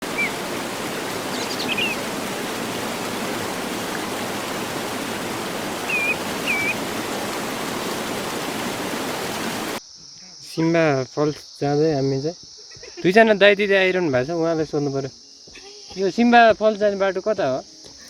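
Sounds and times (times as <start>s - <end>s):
bird chirps: 0.0s - 2.7s, 5.7s - 6.9s
waterfall rushing: 0.0s - 9.8s.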